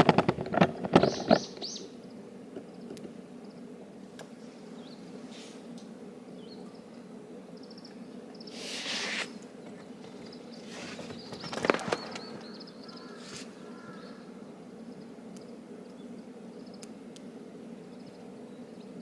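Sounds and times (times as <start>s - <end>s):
small birds chirping: 0.0s - 19.0s
hissy rush: 8.5s - 13.6s.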